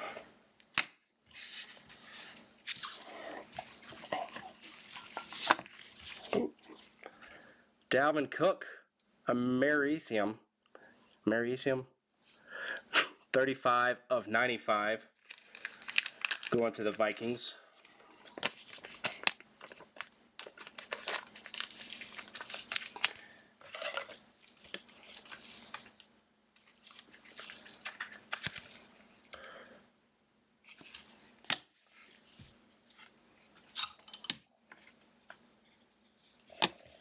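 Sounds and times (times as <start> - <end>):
plastic packaging crinkling and tearing: 1.3 - 7.0, 15.2 - 29.3.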